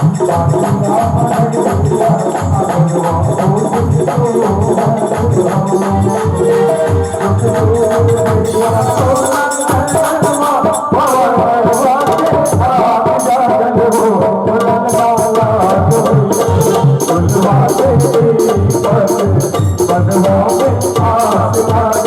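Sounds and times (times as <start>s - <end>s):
low drum beat: 0.0s - 10.6s, 11.4s - 22.0s
jingling rattle percussion: 0.0s - 12.6s, 14.9s - 22.0s
wavering melody line: 4.0s - 10.2s, 15.7s - 18.8s.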